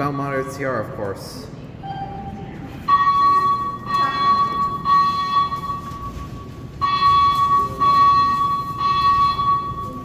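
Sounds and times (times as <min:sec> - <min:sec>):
fire alarm beeping: 0:01.8 - 0:10.0
steady alarm tone: 0:02.8 - 0:10.0.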